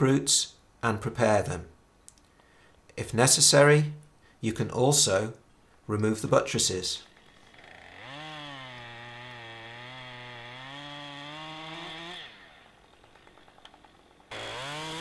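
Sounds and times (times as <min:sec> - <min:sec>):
chainsaw revving while cutting: 0:07.1 - 0:15.0.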